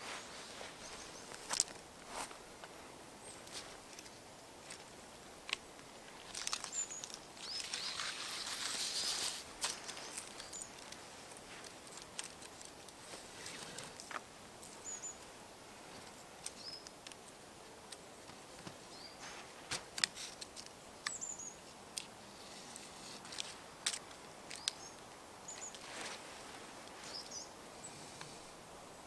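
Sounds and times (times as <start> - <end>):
light rustling: 25.5 - 28.5.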